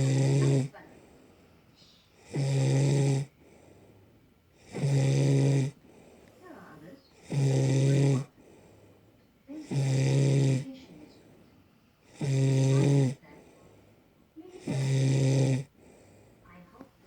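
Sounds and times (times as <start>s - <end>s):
woman snoring: 0.0s - 0.8s, 2.1s - 3.4s, 4.6s - 5.8s, 7.1s - 8.4s, 9.5s - 11.0s, 12.1s - 13.4s, 14.4s - 16.1s
quiet breathing: 0.0s - 17.0s.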